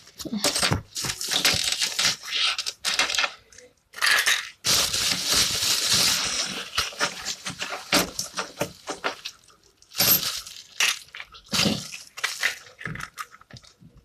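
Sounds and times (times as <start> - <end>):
coins clinking into plastic capsule: 10.0 - 11.2.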